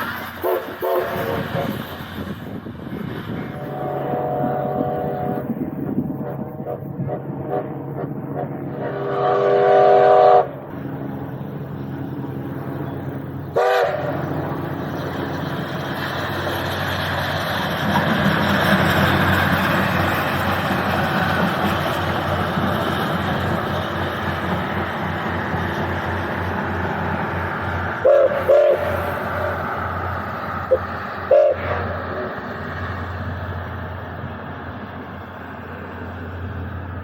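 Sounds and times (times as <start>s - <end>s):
steam locomotive whistle: 0.0s - 2.0s, 3.5s - 5.6s, 6.2s - 10.6s, 13.5s - 14.3s, 27.9s - 30.0s, 30.6s - 32.5s.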